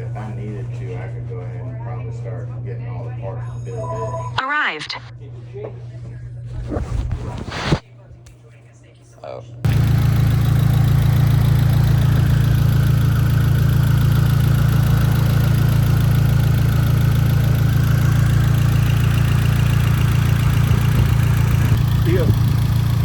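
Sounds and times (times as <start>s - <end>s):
car engine idling: 9.7s - 23.0s
valvetrain ticking: 9.7s - 23.0s.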